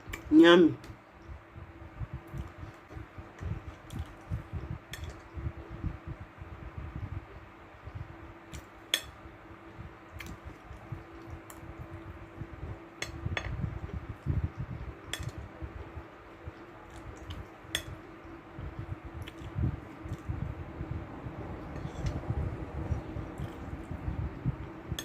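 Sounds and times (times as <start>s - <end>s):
soft chewing: 9.7s - 12.0s, 12.6s - 18.1s, 18.8s - 20.6s, 21.6s - 24.1s.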